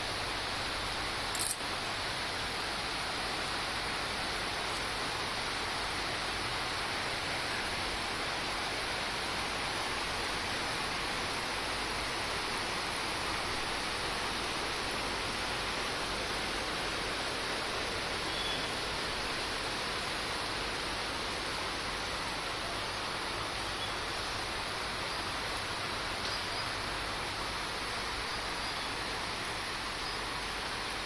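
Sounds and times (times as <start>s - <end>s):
heavy rain: 0.0s - 31.0s
sharp click: 1.3s - 1.6s.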